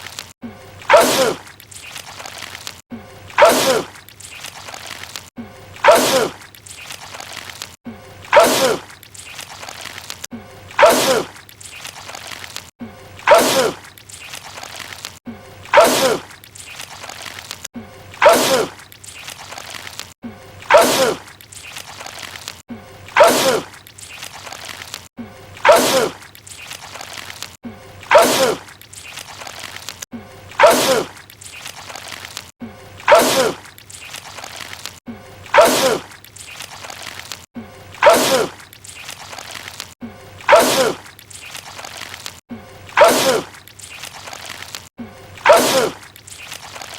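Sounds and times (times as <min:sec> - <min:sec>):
man sneezing loudly: 0:45.4 - 0:46.0.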